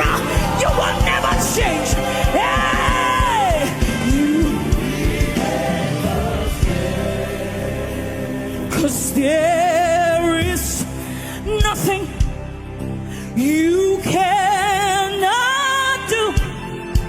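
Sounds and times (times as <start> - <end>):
steady drum beat: 0.0 - 7.5
band playing: 0.0 - 10.7
gospel singing voices: 0.0 - 12.4, 13.2 - 17.0.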